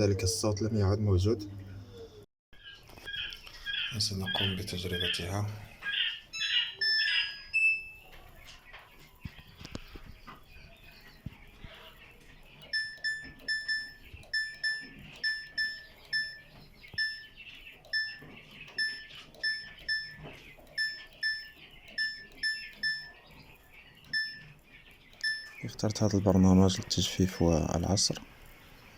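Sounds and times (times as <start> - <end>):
washing machine beeps: 6.3 - 8.2, 12.6 - 23.4, 24.0 - 27.4.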